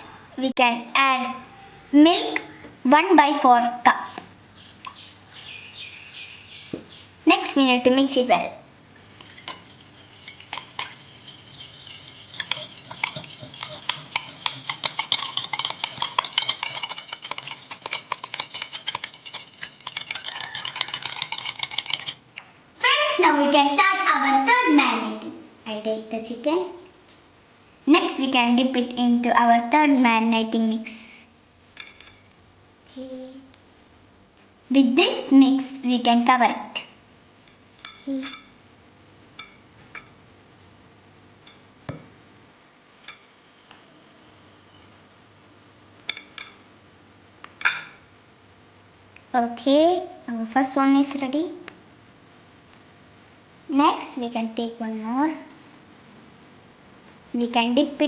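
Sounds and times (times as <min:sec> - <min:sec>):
whisk beating against bowl: 0:10.0 - 0:22.2.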